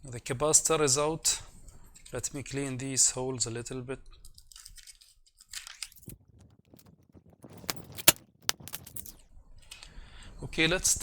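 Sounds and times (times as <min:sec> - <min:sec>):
scratching and handling noises: 0:04.2 - 0:09.2.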